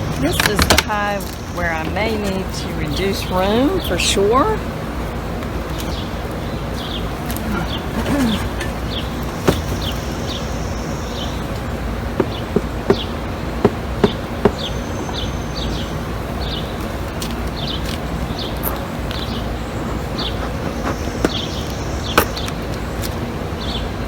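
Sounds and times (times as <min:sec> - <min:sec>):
bees buzzing: 0:00.0 - 0:22.6
small bird chirping: 0:14.0 - 0:23.8.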